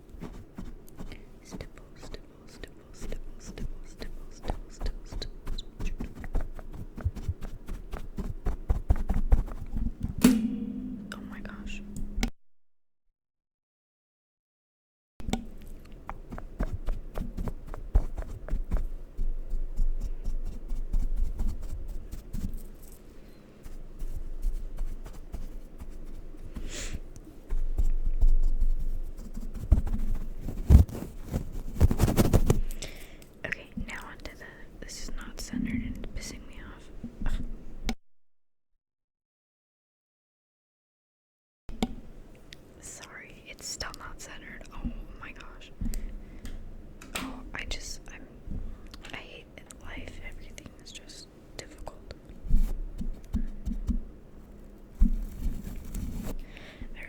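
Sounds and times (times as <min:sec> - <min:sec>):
scratchy brushing: 0:00.0 - 0:10.2, 0:16.1 - 0:32.8, 0:52.4 - 0:54.0, 0:54.9 - 0:56.4
low handling thumps: 0:08.1 - 0:12.3.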